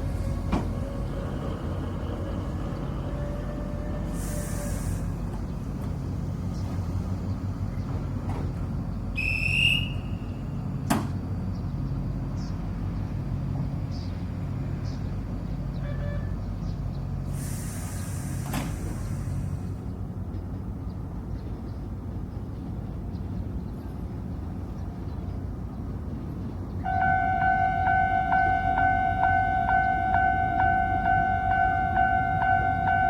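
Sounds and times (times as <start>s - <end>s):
train low hum: 0.0s - 33.0s
short high whistle: 9.2s - 10.2s.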